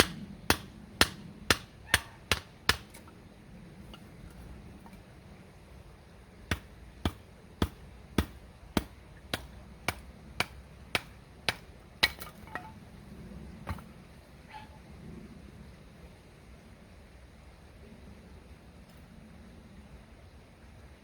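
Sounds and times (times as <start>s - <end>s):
hand tool sharp knocks: 6.5s - 12.7s.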